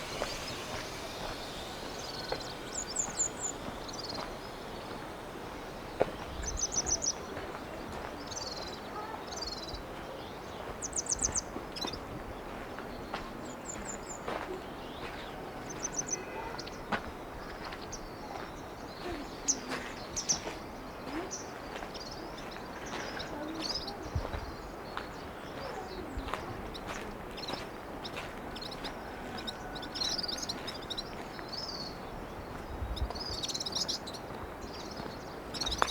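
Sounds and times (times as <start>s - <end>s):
wind hiss: 0.0s - 8.8s, 32.2s - 35.9s
small birds chirping: 0.0s - 35.9s.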